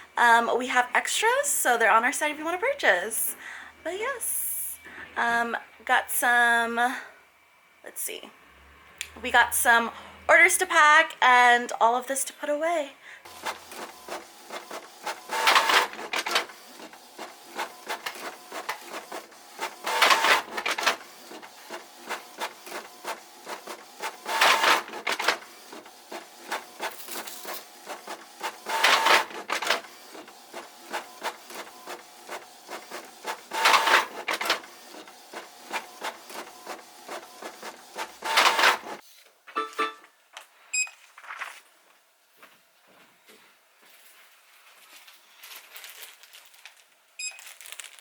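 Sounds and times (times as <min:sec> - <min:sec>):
label printer printing: 0:13.3 - 0:39.0
small printer clicks: 0:13.3 - 0:39.0.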